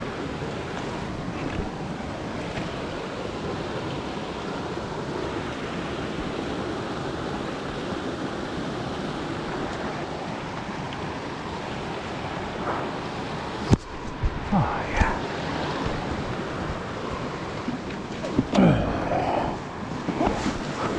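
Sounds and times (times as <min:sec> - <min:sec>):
steady rushing noise: 0:12.2 - 0:20.9.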